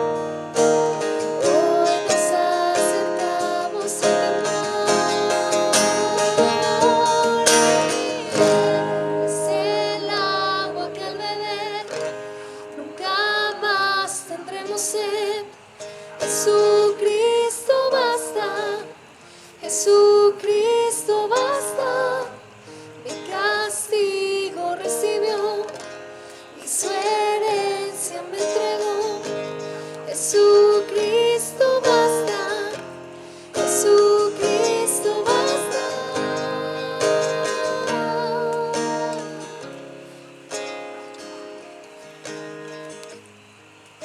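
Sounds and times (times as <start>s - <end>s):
acoustic guitar strumming: 0.0s - 44.0s
person singing worship song: 1.4s - 40.2s.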